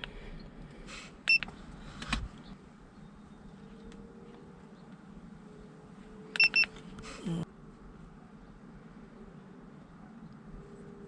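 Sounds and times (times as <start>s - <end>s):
short high electronic beeps: 6.4s - 6.7s.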